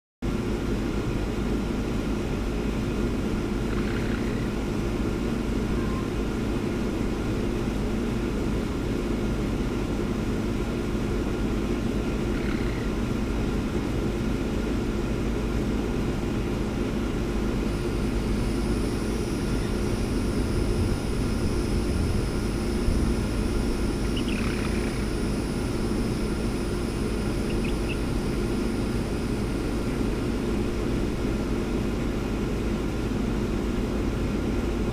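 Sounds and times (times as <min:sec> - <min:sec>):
loud low hum: 0:00.2 - 0:34.9
high-pitched whine: 0:03.2 - 0:07.6, 0:11.1 - 0:14.0, 0:17.4 - 0:32.6
hen chirping and trilling: 0:03.7 - 0:04.6, 0:12.2 - 0:13.0, 0:17.8 - 0:30.1.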